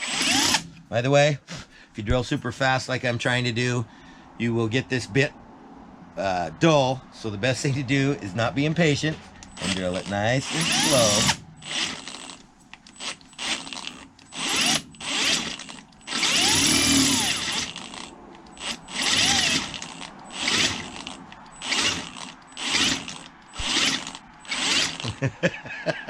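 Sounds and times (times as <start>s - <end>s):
electric drill in short bursts: 0.0s - 0.8s, 9.5s - 25.2s.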